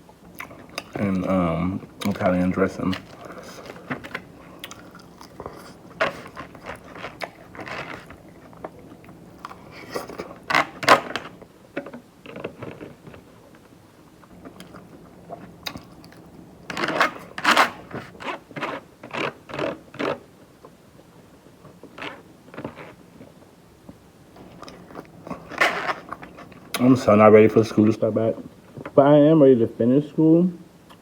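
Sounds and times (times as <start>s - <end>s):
person chewing crunchy salad: 0.3s - 11.4s, 14.2s - 20.3s, 21.7s - 26.8s.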